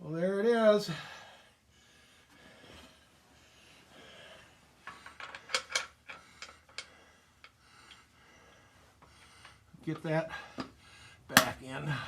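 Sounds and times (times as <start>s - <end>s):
metal clinks and taps: 4.8s - 8.0s.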